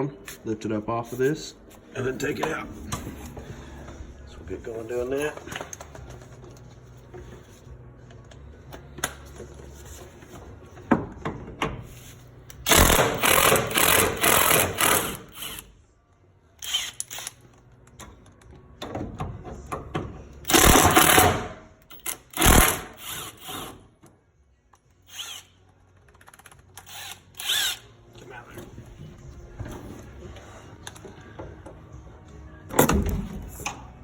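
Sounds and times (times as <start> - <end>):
impact driver hammering rattle: 12.7 - 15.3, 20.5 - 21.6.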